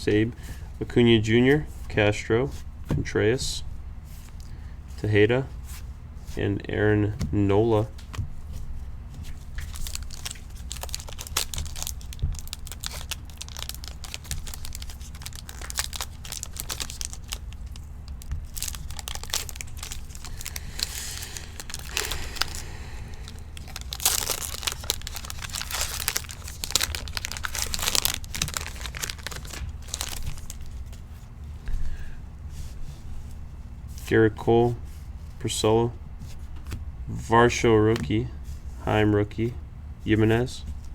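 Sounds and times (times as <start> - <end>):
low steady hum: 0.0 - 40.9
wrappers crinkling and tearing: 9.2 - 31.0.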